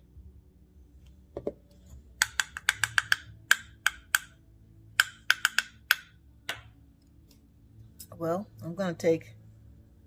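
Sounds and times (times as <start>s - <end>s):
spoon tapping on dish: 2.2s - 4.3s, 5.0s - 6.7s.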